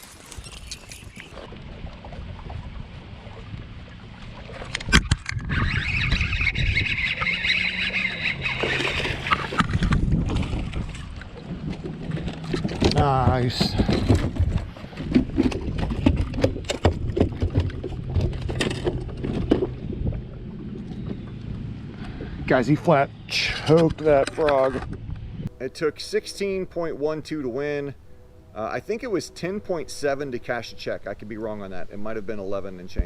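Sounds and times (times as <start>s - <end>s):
wind on microphone: 0.0s - 8.2s, 8.9s - 21.2s
boat engine rumble: 0.0s - 33.0s
knocks and clatter on a boat: 9.5s - 21.5s.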